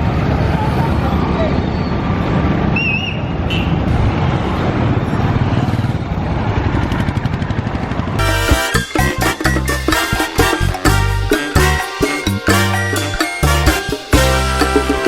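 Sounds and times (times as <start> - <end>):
road traffic rumble: 0.0 - 15.0
music: 8.2 - 15.0.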